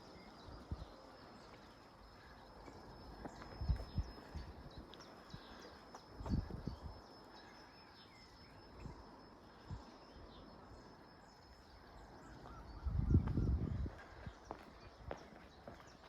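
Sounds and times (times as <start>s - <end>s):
faint bird chirps: 0.0s - 16.0s.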